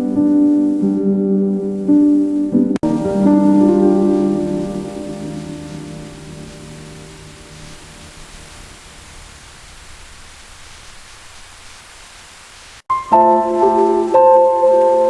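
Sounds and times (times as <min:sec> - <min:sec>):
music: 0:00.0 - 0:07.7, 0:12.9 - 0:15.0
rain hiss: 0:00.0 - 0:15.0.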